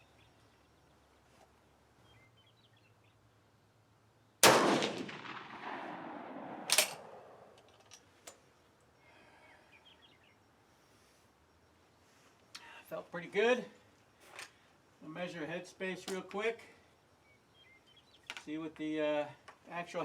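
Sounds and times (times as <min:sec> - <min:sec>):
rifle shot with echo: 0:04.4 - 0:07.6.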